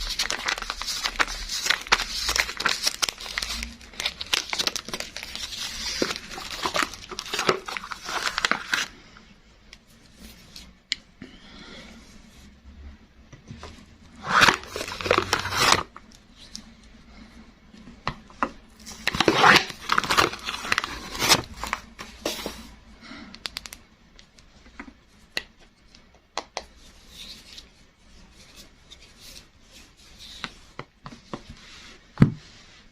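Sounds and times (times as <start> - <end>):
wrapper crinkling and tearing: 0.0 - 8.9, 14.2 - 16.0, 18.9 - 22.0.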